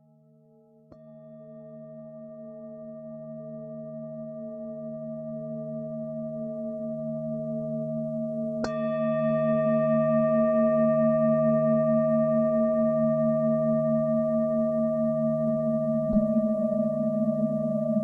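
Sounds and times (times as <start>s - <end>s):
singing bowl struck: 8.6s - 13.0s, 16.1s - 18.0s
singing bowls ringing: 8.7s - 18.0s.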